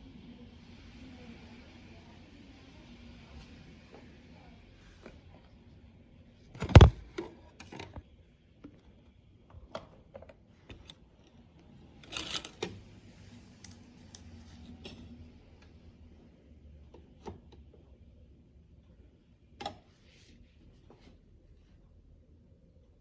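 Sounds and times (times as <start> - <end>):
objects being handled: 12.0 - 15.0.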